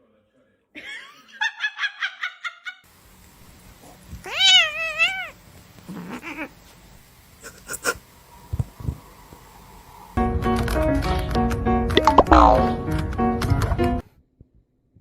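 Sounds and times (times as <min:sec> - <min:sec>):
cat meowing: 0:04.2 - 0:06.6.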